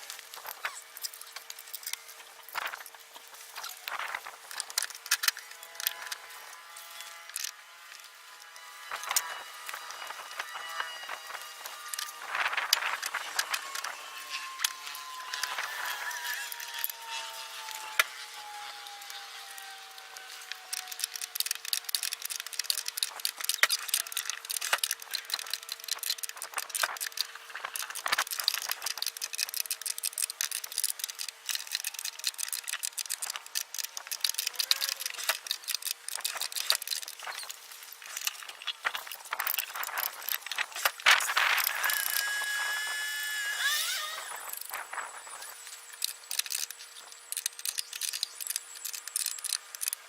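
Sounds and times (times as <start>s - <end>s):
metal tools clicking and rattling: 20.4s - 42.3s.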